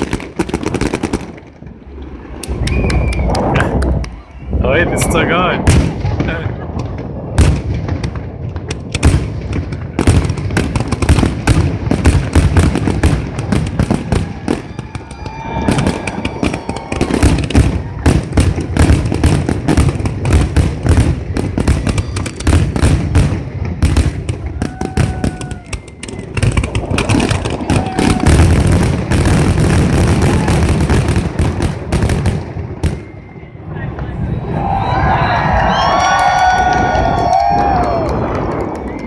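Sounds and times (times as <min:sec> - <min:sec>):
fireworks bangs and crackles: 0:00.0 - 0:39.0
whistling fireworks: 0:00.0 - 0:39.0.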